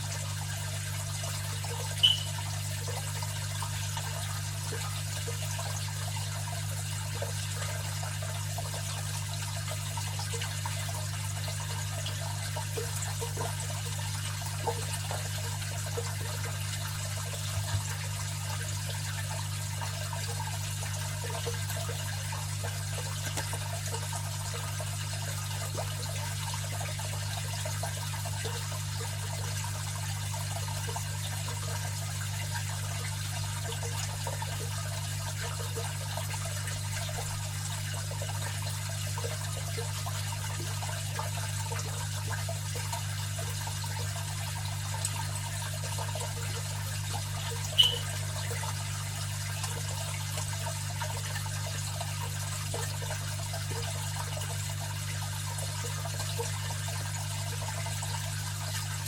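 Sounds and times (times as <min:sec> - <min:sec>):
water trickling and splashing: 0:00.0 - 0:59.0
sharp click: 0:02.0 - 0:02.3
low filter hum: 0:02.0 - 0:02.4.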